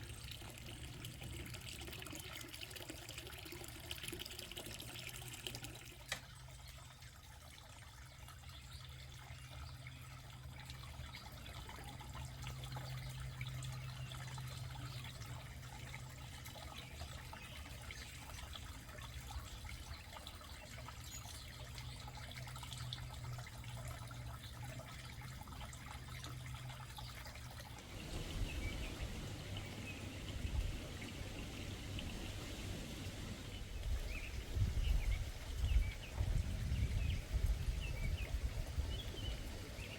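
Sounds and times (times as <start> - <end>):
water trickling: 0.0 - 39.9
uneven low rumbling: 27.8 - 39.9.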